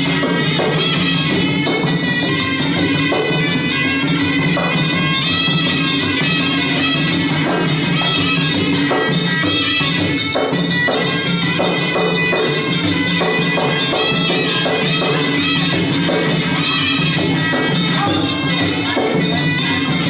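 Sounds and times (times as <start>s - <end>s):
drum beats: 0.0s - 20.0s
small cymbals: 0.0s - 20.0s.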